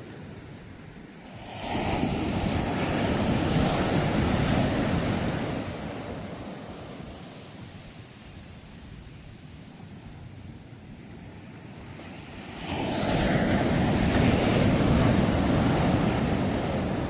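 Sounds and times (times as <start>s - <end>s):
ocean wave breaking: 0.0s - 8.4s, 11.4s - 17.0s.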